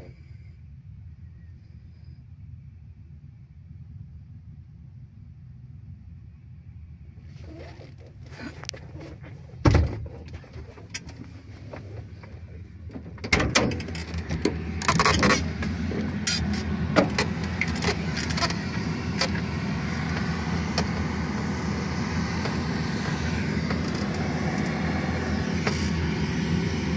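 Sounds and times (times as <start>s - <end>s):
truck engine running: 2.8s - 26.9s
clattering knocks and rattles: 8.8s - 19.5s
loud thump: 9.6s - 10.1s.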